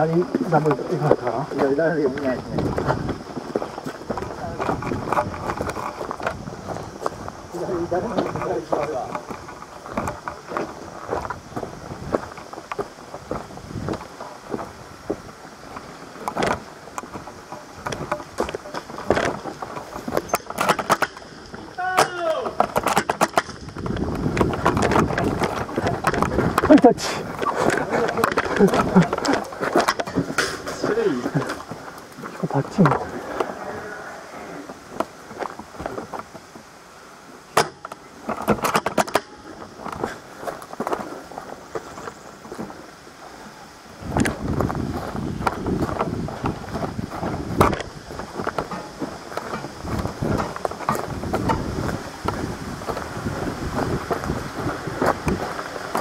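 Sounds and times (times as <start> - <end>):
rustling close to microphone: 0.0 - 21.8, 22.5 - 56.0
clicks and rattles: 15.8 - 33.5, 37.6 - 41.0.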